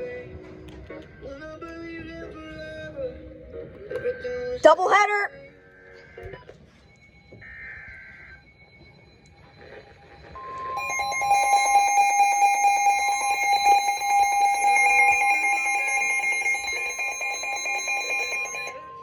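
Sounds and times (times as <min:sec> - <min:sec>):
loud steady alarm tone: 0:10.8 - 0:18.8.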